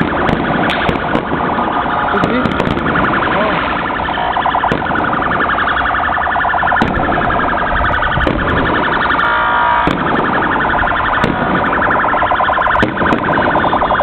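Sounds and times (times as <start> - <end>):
firework bangs: 0.0 - 14.0
car horns sounding: 9.0 - 10.0, 13.4 - 14.0.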